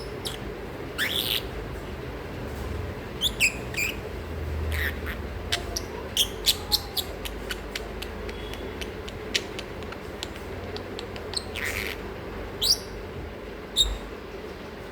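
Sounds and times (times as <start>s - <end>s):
lovebird chirping: 0.0s - 1.5s, 3.2s - 4.1s, 4.7s - 13.0s, 13.7s - 14.1s.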